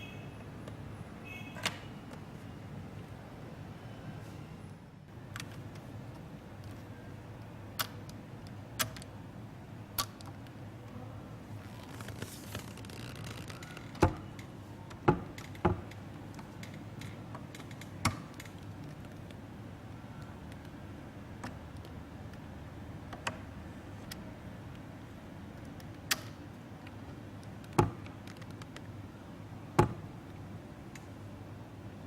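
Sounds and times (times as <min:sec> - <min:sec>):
sharp clicks and knocks: 0:12.9 - 0:19.4.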